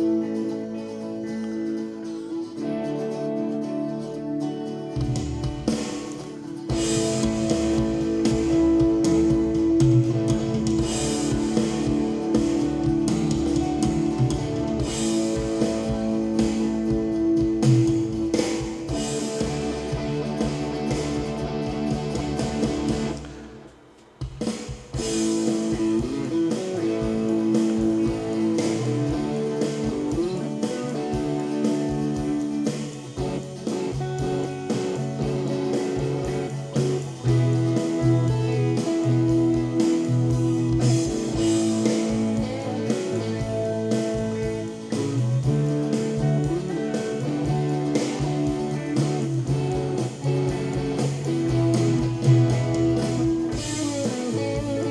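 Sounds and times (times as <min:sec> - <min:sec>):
blues band song with guitar and drums: 0:00.0 - 0:54.9.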